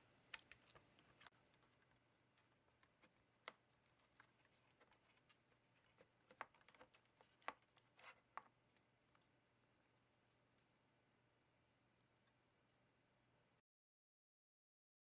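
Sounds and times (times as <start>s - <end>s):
small clicks handling laptop parts: 0.3s - 8.5s.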